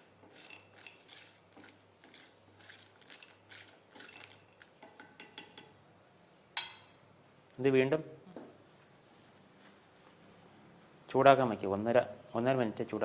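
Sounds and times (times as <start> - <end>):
spoon scraping in bowl: 0.0 - 5.0.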